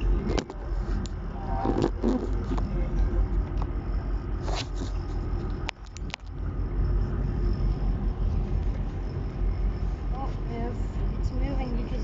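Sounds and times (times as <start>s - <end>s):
boat engine rumbling: 0.0s - 12.0s.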